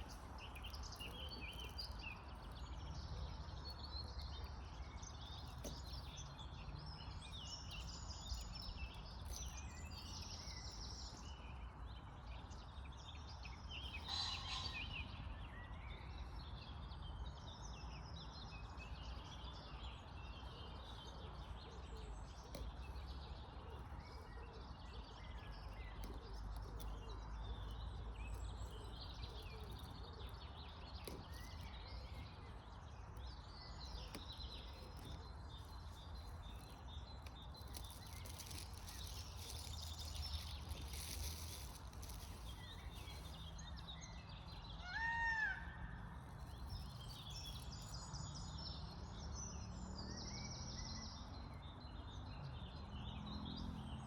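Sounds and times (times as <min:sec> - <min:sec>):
birds calling and chirping: 0:18.8 - 0:51.5.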